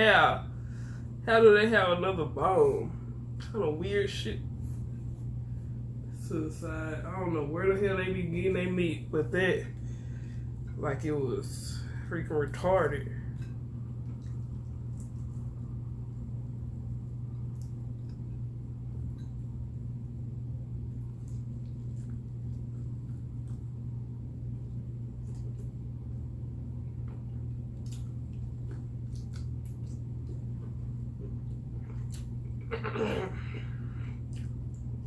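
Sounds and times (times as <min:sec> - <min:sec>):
low electrical hum: 0:00.0 - 0:35.0
chewing and mouth smacks: 0:13.3 - 0:19.8, 0:20.8 - 0:26.2, 0:26.8 - 0:32.8, 0:34.1 - 0:35.0.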